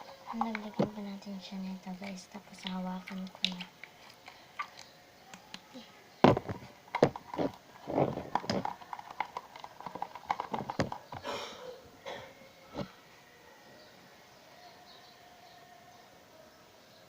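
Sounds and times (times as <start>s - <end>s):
slime squelching: 0.0s - 11.1s.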